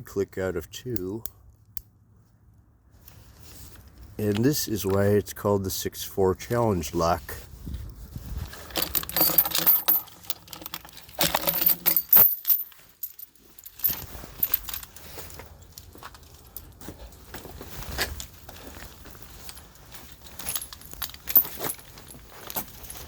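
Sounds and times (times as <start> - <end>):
padlock rattling and clicking: 8.5 - 15.0, 20.2 - 22.7.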